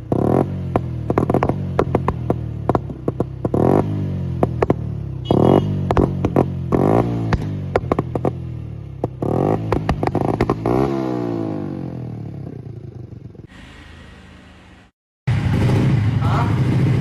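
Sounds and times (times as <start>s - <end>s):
exhaust backfire pops: 0.0s - 11.0s
motorcycle engine revving: 0.0s - 17.0s.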